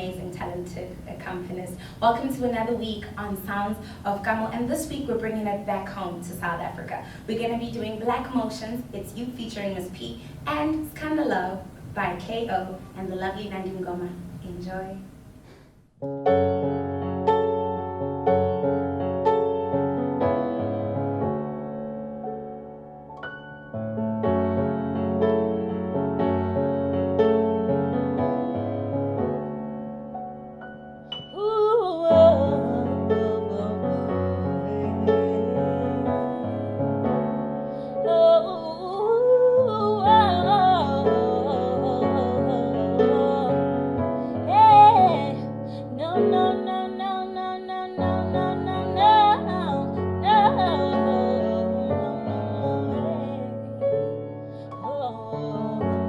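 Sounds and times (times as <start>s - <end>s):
piano chords: 0.0s - 14.4s, 16.0s - 56.0s
woman's wordless vocals: 31.3s - 36.6s, 38.0s - 53.7s, 54.7s - 56.0s.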